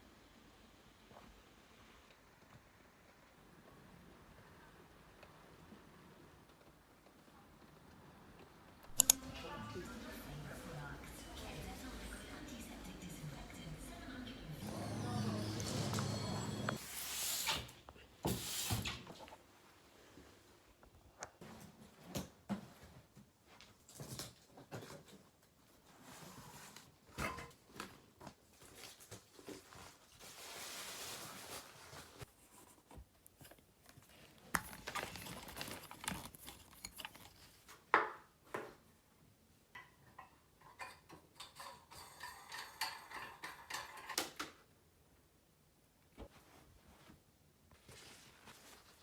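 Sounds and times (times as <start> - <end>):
small objects clicking and knocking: 34.5 - 37.7.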